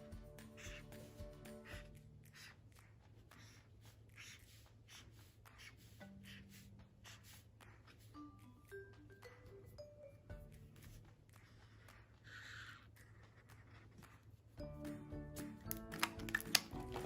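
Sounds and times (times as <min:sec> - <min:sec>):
faint background music: 0:00.0 - 0:17.0
pencil scratching on paper: 0:00.4 - 0:09.7, 0:10.4 - 0:14.6.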